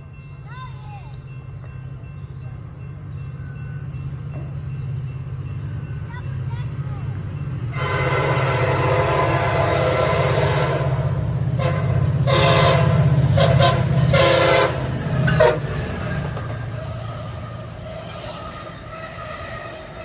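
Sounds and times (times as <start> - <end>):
train rumble: 0.0 - 20.0
diesel locomotive horn: 7.7 - 20.0.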